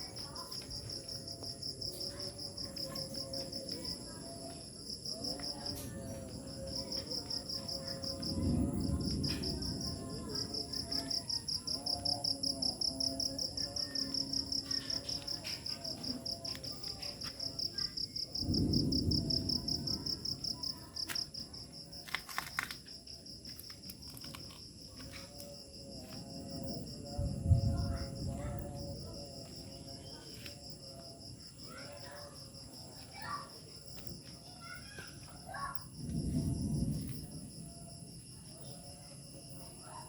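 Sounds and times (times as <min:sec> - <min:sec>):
crickets chirping: 0:00.0 - 0:40.0
high insect trill: 0:00.0 - 0:40.0.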